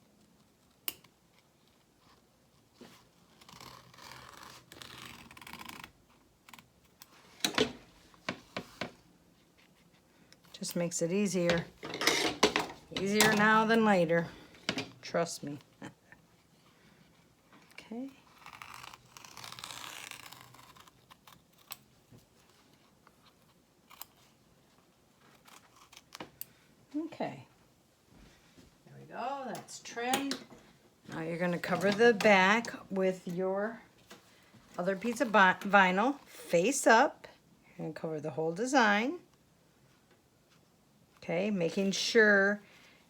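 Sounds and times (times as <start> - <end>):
scissors cutting: 23.9 - 24.2.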